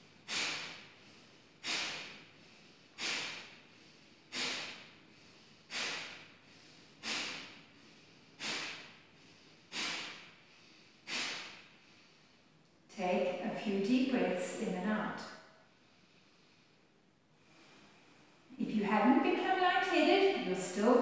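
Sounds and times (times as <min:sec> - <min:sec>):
woman's sharp nasal exhalations: 0:00.2 - 0:12.4.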